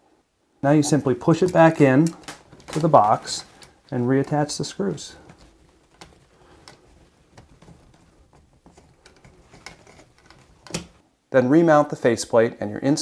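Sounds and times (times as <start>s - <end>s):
faint clicks and scrapes: 1.3s - 11.0s.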